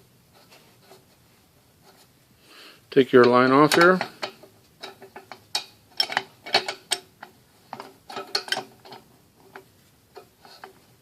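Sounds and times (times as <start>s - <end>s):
wrench metallic clicks and taps: 3.2s - 9.6s.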